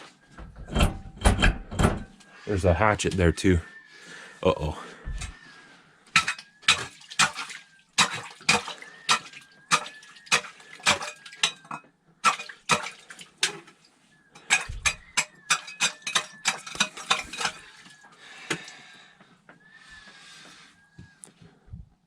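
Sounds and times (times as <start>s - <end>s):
hatchet striking ice: 6.2s - 7.4s, 8.0s - 13.6s, 14.5s - 17.5s
ice chips clinking: 8.0s - 13.6s, 14.4s - 17.9s.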